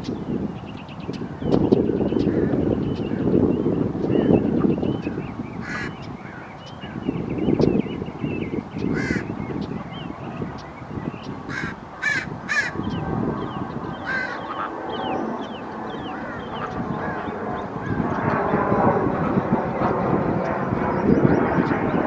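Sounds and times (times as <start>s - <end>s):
harsh bird calls: 0.0s - 22.0s
steady low rumble: 0.0s - 22.0s.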